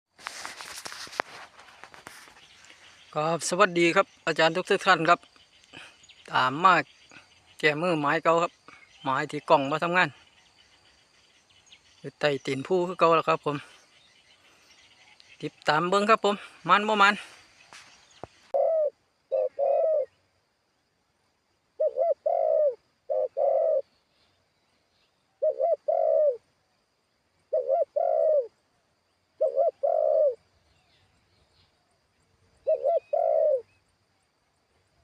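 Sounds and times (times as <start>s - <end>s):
dove cooing: 18.5s - 20.2s, 21.8s - 23.9s, 25.4s - 26.4s, 27.5s - 28.6s, 29.4s - 30.5s, 32.6s - 33.7s.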